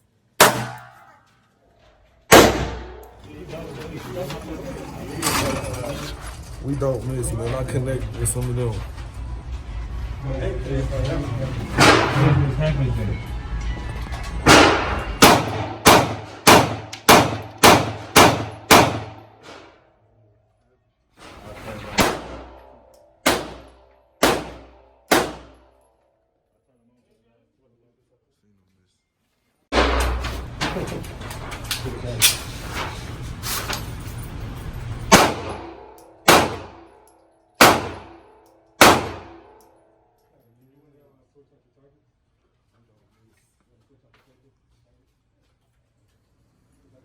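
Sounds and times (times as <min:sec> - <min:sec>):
gunshots with ringing echo: 0:00.4 - 0:01.2, 0:02.3 - 0:03.2, 0:14.4 - 0:19.3, 0:22.0 - 0:25.7, 0:35.1 - 0:37.0, 0:37.6 - 0:39.6.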